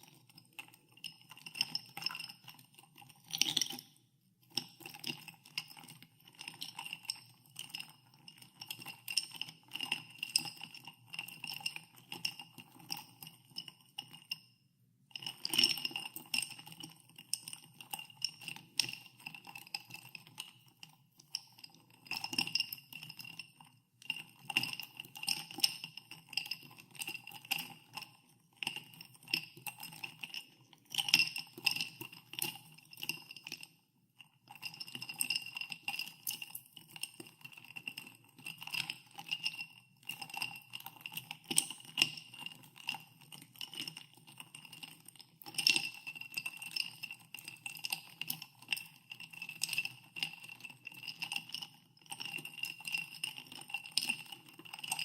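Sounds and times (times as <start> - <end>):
ice cubes clinking in a glass: 3.2 - 3.8.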